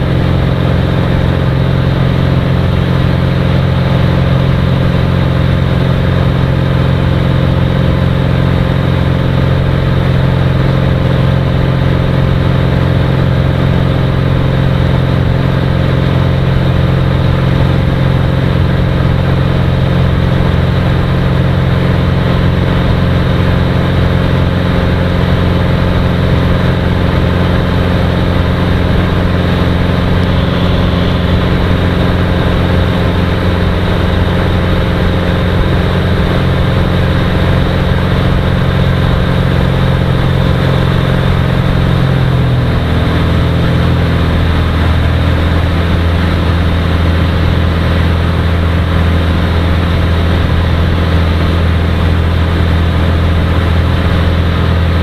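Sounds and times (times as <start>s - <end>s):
propeller aircraft engine drone: 0.0s - 55.0s.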